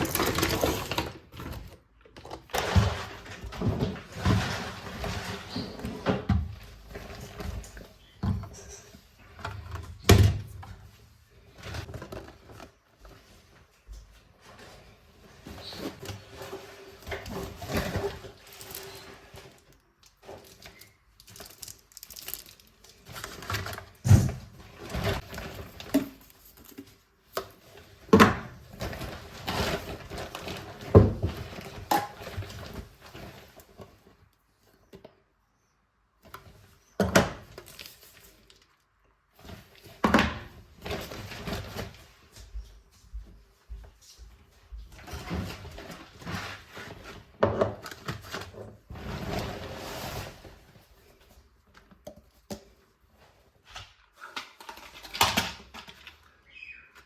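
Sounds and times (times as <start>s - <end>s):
objects knocked and set down: 0.0s - 10.7s.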